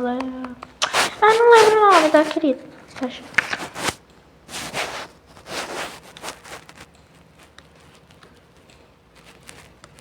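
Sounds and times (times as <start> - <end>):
book pages turning: 0.8 - 8.3.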